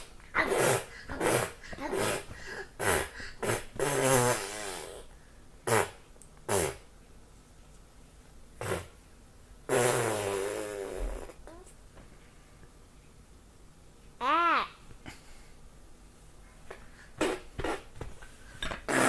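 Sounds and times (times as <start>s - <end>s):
child blowing raspberries: 0.0s - 5.1s, 8.6s - 9.0s, 9.7s - 11.6s, 17.0s - 17.9s, 18.6s - 19.0s.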